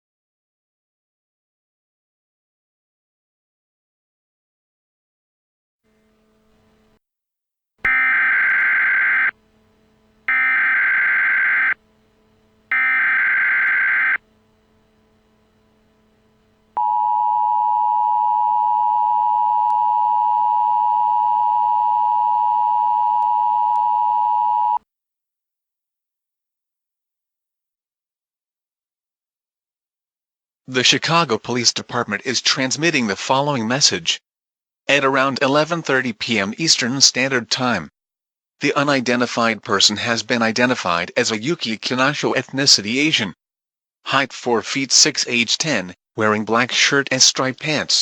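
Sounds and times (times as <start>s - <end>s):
screeching data tone bursts: 7.9s - 9.4s, 10.3s - 11.8s, 12.7s - 14.2s
two-tone attention signal: 7.9s - 9.4s, 10.3s - 11.8s, 12.7s - 14.2s, 16.8s - 24.8s.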